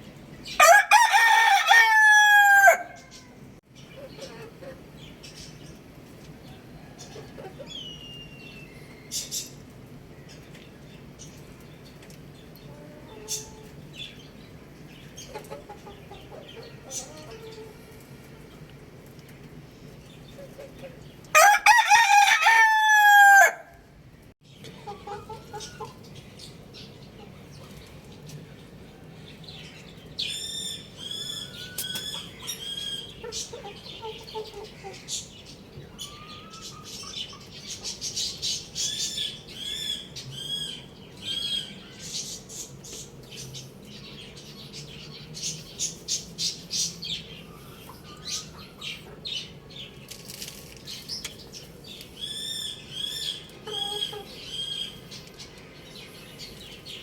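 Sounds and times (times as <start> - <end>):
rooster crowing: 0.6 - 3.2, 21.4 - 23.8.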